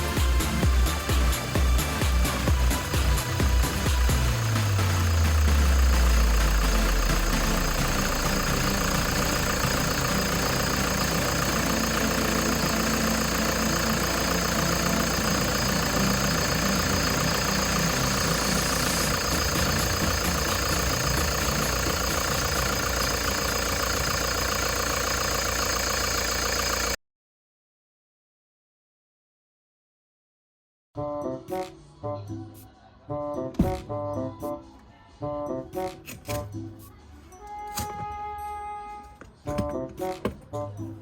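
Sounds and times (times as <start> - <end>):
diesel engine idling: 0.0 - 27.0.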